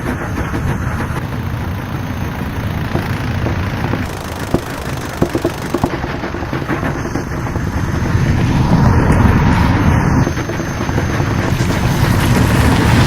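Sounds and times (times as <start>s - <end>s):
low fluttering engine drone: 0.0s - 13.0s.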